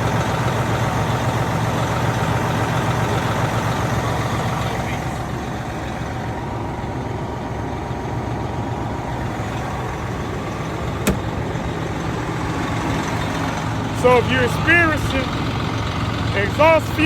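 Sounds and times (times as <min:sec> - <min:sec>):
diesel truck engine idling: 0:00.0 - 0:17.0
sharp click: 0:11.1 - 0:11.4.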